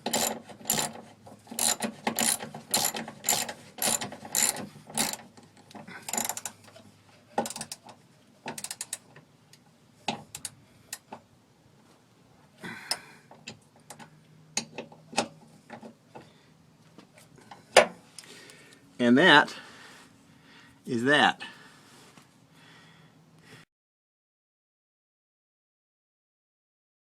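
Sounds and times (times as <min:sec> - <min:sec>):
socket ratchet clicking: 0:00.0 - 0:05.3, 0:06.1 - 0:06.7, 0:07.4 - 0:07.8, 0:08.5 - 0:09.0.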